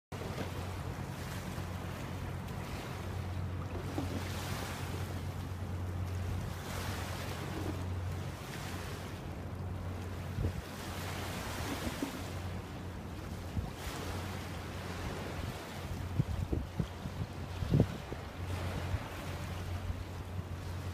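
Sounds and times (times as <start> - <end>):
river water splashing: 0.2 - 20.9
wind on microphone: 10.2 - 12.4, 14.8 - 20.0.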